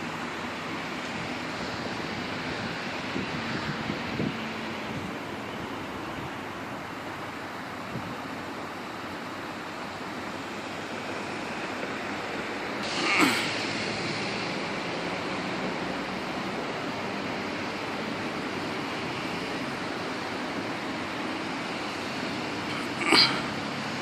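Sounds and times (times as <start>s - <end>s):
sharp hiss: 12.8s - 14.6s.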